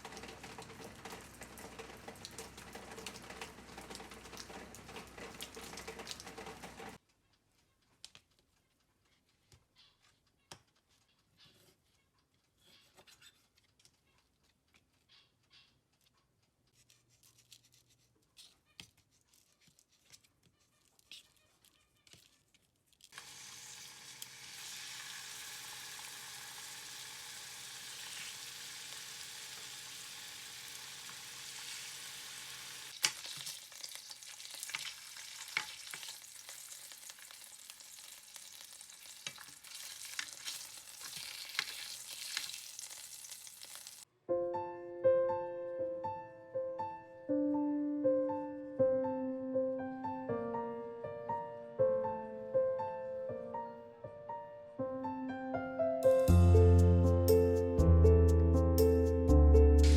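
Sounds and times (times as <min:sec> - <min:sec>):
food sizzling in hot oil: 0:23.1 - 0:44.1.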